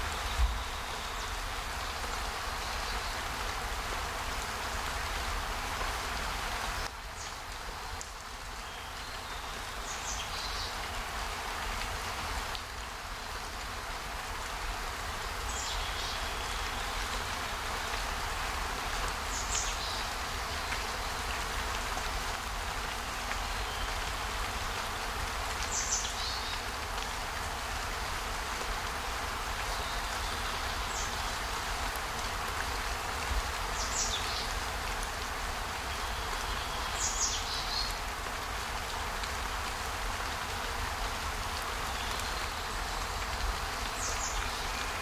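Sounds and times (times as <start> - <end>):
outdoor background hiss: 0.0 - 45.0.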